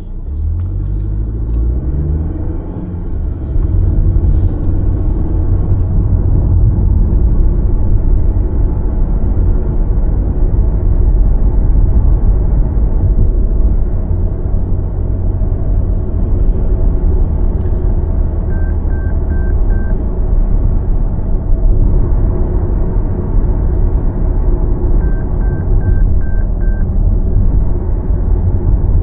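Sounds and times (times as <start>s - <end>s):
car road and engine rumble: 0.0s - 29.0s
short electronic beeps: 18.5s - 20.0s, 25.0s - 26.8s.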